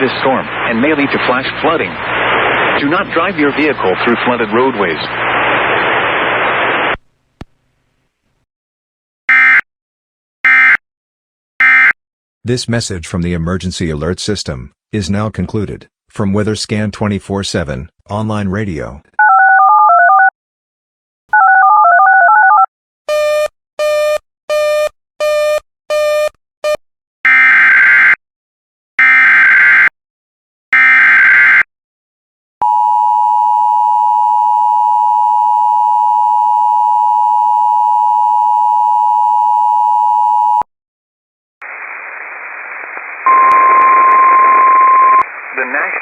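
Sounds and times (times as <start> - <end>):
radio hiss: 0.0 - 7.0, 41.6 - 43.5, 45.2 - 46.0.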